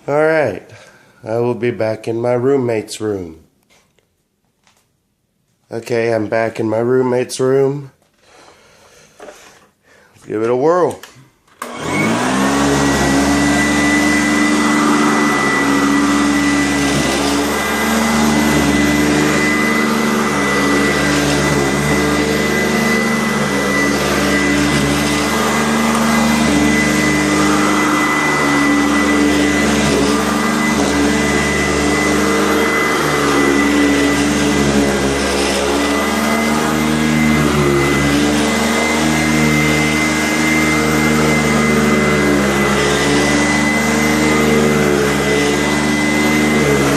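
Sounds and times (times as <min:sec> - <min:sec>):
upright vacuum cleaner running: 0:11.6 - 0:46.9.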